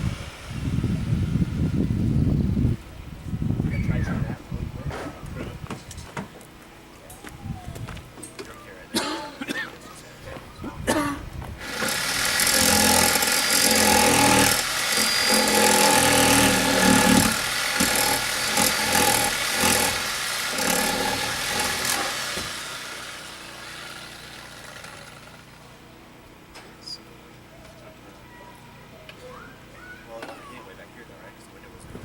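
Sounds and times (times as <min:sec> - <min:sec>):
handheld power tool cutting: 0:11.6 - 0:25.6.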